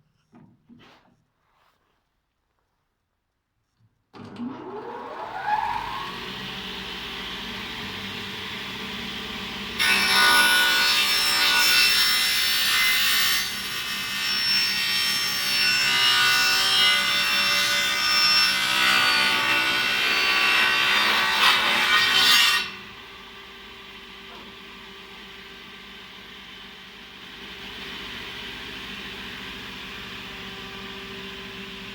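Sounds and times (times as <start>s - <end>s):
mitre saw cutting: 4.6s - 23.0s.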